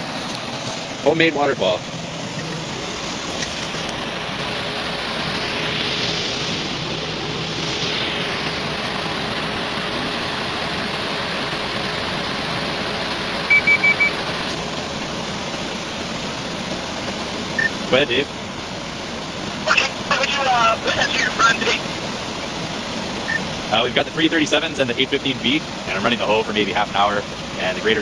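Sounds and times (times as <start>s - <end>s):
water rushing and pouring: 0.0s - 28.0s
quick high beeps: 13.5s - 14.2s, 17.6s - 17.8s.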